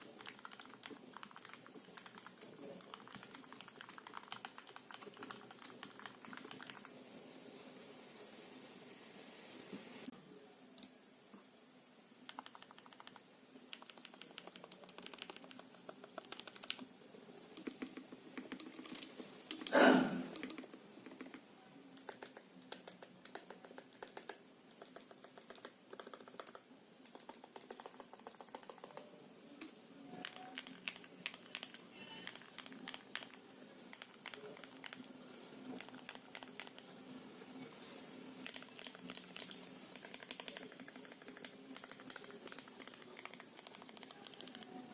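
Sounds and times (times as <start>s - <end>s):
soft muted keyboard clacks: 0.0s - 7.0s, 12.3s - 16.8s, 20.3s - 29.1s, 30.2s - 35.1s, 38.4s - 44.8s.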